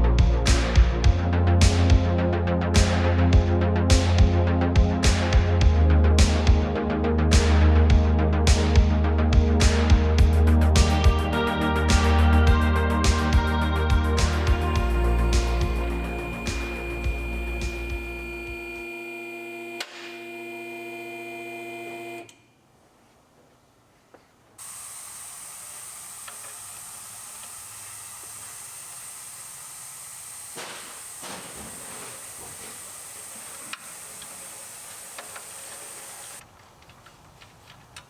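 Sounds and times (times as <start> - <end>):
background music: 0.0 - 18.6
faint high whine: 14.3 - 22.4
steady hiss: 24.6 - 36.4.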